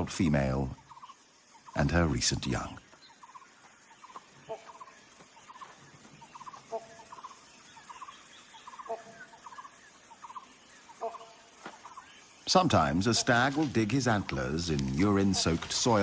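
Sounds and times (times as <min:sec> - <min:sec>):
rapid rattling chirps: 0:00.8 - 0:16.0
low two-tone animal call: 0:03.1 - 0:12.1.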